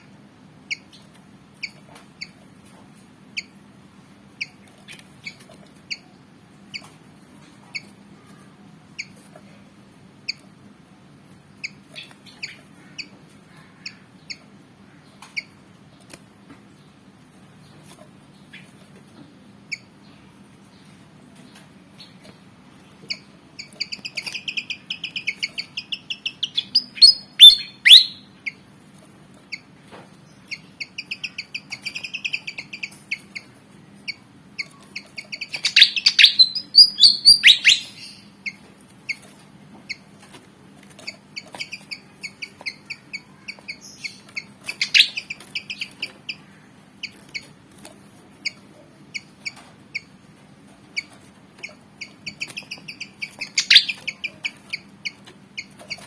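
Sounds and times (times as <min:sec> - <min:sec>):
bird squeaky notes: 0:23.1 - 0:28.2, 0:35.2 - 0:38.3, 0:41.0 - 0:46.2, 0:51.0 - 0:56.0
bird sweeping calls: 0:35.3 - 0:38.3, 0:41.6 - 0:46.4, 0:52.2 - 0:54.8.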